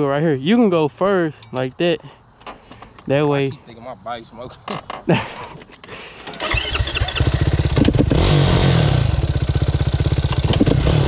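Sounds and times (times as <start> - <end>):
vehicle engine starting and running: 6.2 - 11.0.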